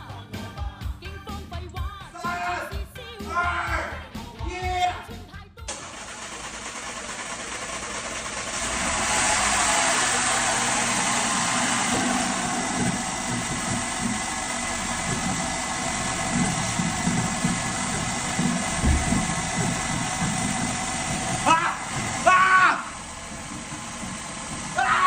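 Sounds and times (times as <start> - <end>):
car engine starting and idling: 5.7 - 25.0.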